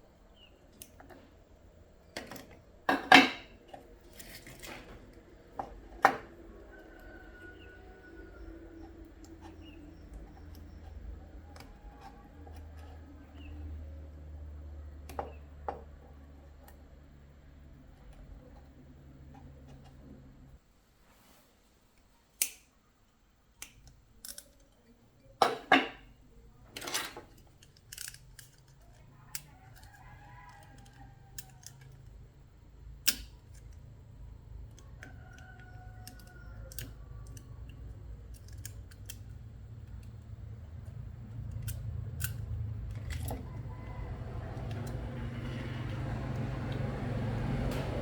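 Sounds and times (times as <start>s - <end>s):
tools clicking and tapping: 23.6s - 26.1s, 26.8s - 32.1s, 34.6s - 43.4s.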